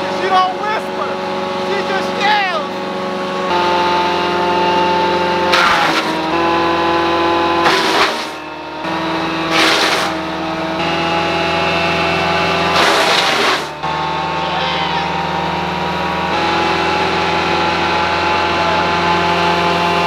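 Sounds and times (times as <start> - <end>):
wood chipper engine running: 0.0 - 20.0
wood being chipped: 5.2 - 10.8, 12.0 - 13.8.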